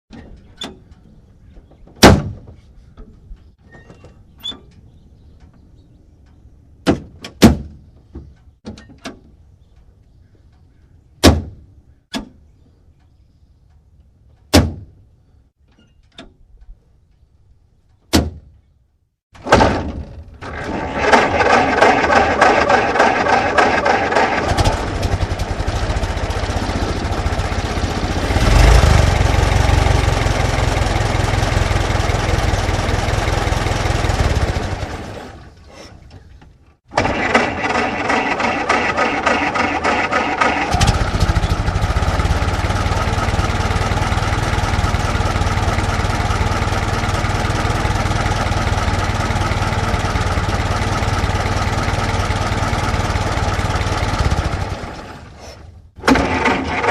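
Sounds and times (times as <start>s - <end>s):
car engine idling: 22.4s - 35.1s, 40.8s - 55.0s.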